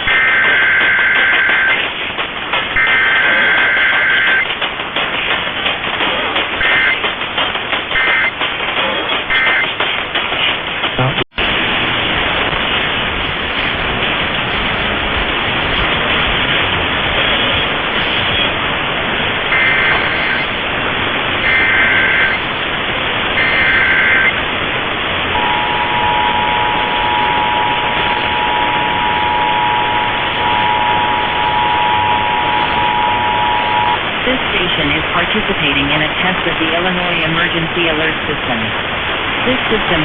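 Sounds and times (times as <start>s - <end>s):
steady two-tone attention signal: 0.0s - 1.8s, 2.8s - 4.5s, 6.6s - 7.0s, 19.5s - 20.6s, 21.4s - 22.6s, 23.4s - 24.4s, 25.3s - 34.1s
warbling data bursts: 0.0s - 1.9s, 2.7s - 4.5s, 6.6s - 7.1s, 7.9s - 9.8s, 19.5s - 20.6s, 21.4s - 22.7s, 23.4s - 24.4s, 25.3s - 35.2s
radio static hiss: 0.0s - 40.0s.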